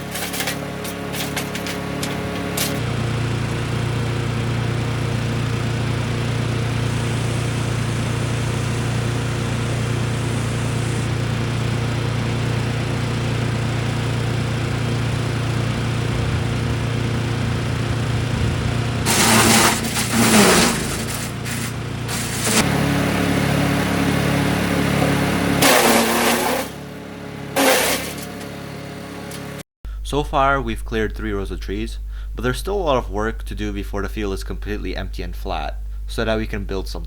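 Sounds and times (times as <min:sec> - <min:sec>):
loud rough noisy burst: 0:00.0 - 0:28.5
small engine running: 0:00.0 - 0:29.6.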